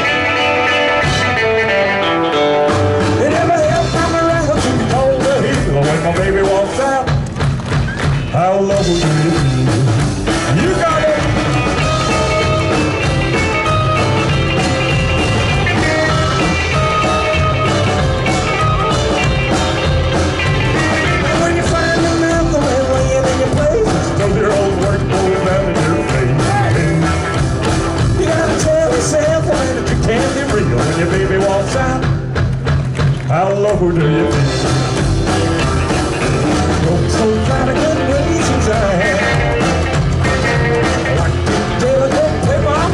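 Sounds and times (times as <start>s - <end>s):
live band playing: 0.0s - 42.9s
person singing lead vocal: 3.0s - 7.3s, 8.3s - 12.4s, 20.7s - 27.4s, 28.1s - 32.3s, 33.3s - 35.0s, 36.7s - 39.9s, 40.5s - 42.9s.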